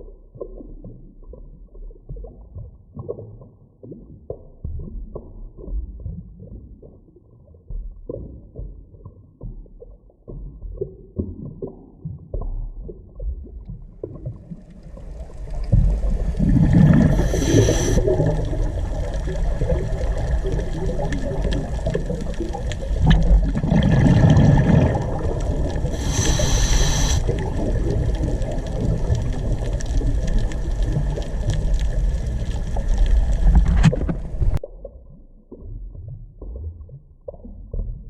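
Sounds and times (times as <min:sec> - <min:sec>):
underwater rumbling: 0:00.0 - 0:38.0
underwater clicking: 0:10.4 - 0:34.7
high hiss bursts: 0:17.1 - 0:18.1, 0:25.9 - 0:27.3.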